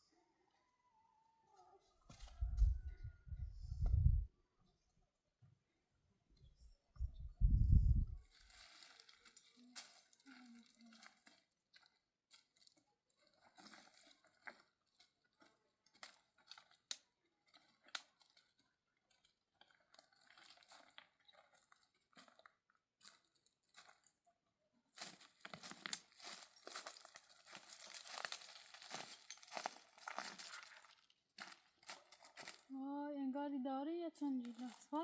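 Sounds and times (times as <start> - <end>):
rustling and crinkling: 8.2 - 24.2, 24.9 - 32.8, 34.2 - 35.0.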